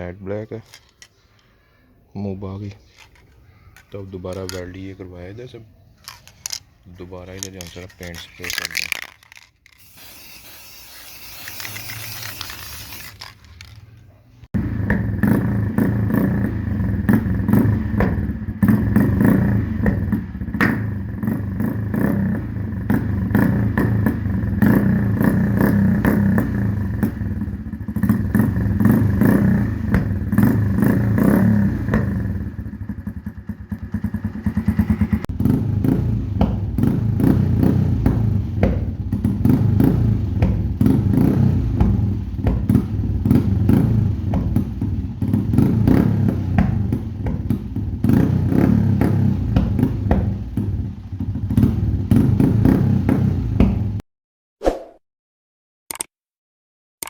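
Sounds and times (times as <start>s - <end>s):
hiss: 9.8s - 12.8s
motorcycle engine revving: 14.5s - 54.0s
exhaust crackles and pops: 38.0s - 52.8s.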